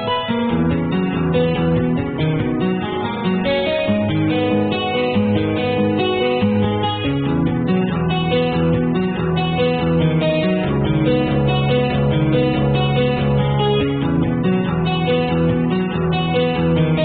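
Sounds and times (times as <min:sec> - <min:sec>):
acoustic guitar playing: 0:00.0 - 0:17.0.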